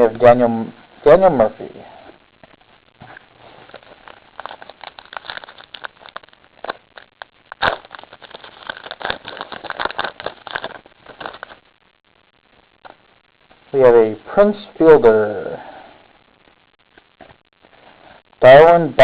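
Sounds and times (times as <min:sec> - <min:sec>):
foil wrapper crinkling: 0:03.0 - 0:11.7
cards being handled: 0:03.1 - 0:11.6.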